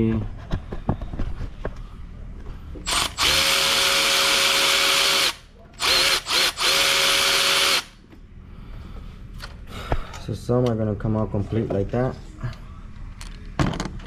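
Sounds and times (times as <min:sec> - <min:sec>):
power driver motor whirring: 0:02.8 - 0:08.0.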